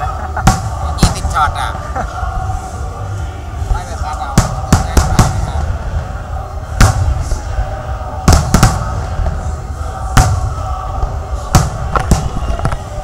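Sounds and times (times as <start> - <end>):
low rumble: 0.0 - 13.0
fireworks bangs: 4.3 - 5.7, 8.3 - 9.4, 11.4 - 13.0.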